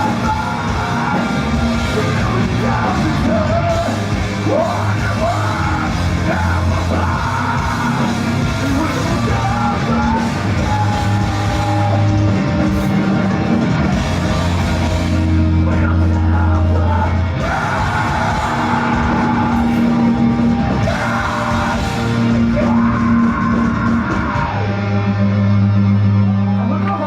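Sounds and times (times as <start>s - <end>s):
hardcore band playing live: 0.0s - 27.0s
singer yelling: 0.0s - 27.0s.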